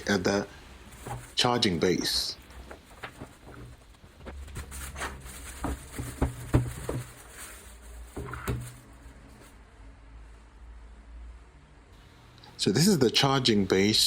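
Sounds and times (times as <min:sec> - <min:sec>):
packaging rustling: 0:00.8 - 0:09.5.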